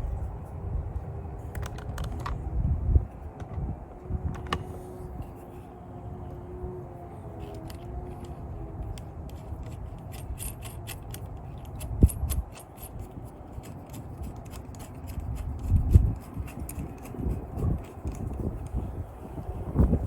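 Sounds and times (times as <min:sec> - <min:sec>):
small metal clicks: 0:07.4 - 0:18.8.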